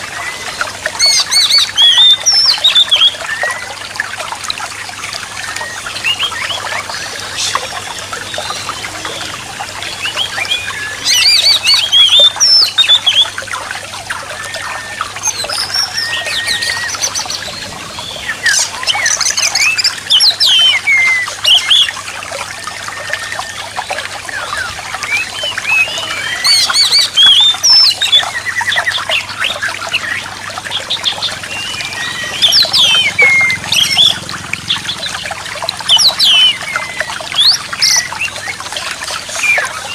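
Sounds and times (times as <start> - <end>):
trickle of running water: 0.0 - 39.9
bird whistled song phrases: 0.1 - 3.7, 10.0 - 13.4, 14.2 - 22.0, 22.8 - 30.2, 31.5 - 34.2.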